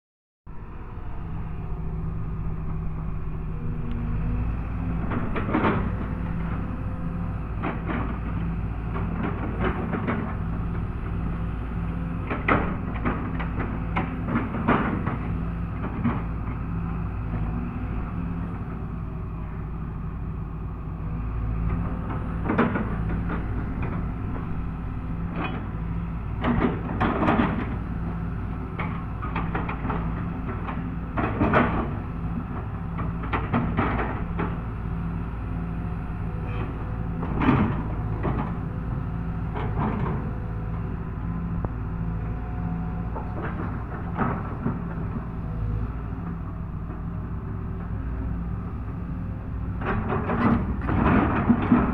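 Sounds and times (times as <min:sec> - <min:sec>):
excavator diesel engine running: 0:00.5 - 0:51.9
machine clanks and knocks: 0:04.9 - 0:06.7, 0:07.5 - 0:11.2, 0:12.1 - 0:16.6, 0:21.7 - 0:28.0, 0:28.8 - 0:34.6, 0:36.5 - 0:38.7, 0:39.5 - 0:40.8, 0:43.0 - 0:45.4, 0:49.7 - 0:51.9.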